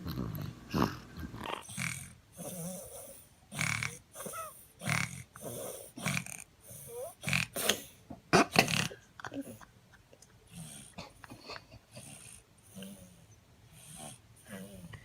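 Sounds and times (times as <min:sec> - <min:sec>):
baby snoring: 0:00.0 - 0:07.9.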